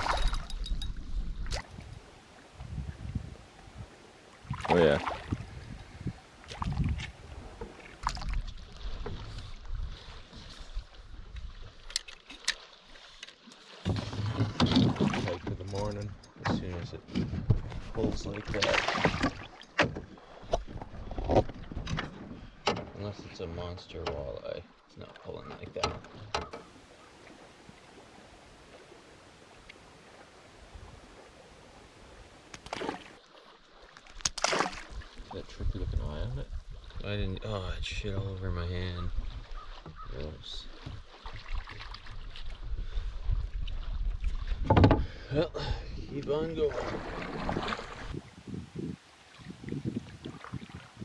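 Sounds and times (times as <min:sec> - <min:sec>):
water rumble: 0:00.0 - 0:51.0
wind: 0:00.0 - 0:51.0
knocks against canoe hull: 0:44.6 - 0:45.2.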